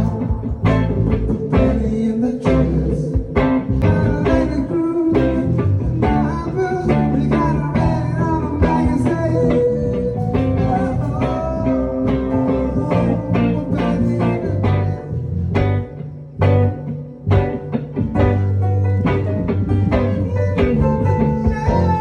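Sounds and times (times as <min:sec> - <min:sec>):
live blues-rock band: 0:00.0 - 0:22.0.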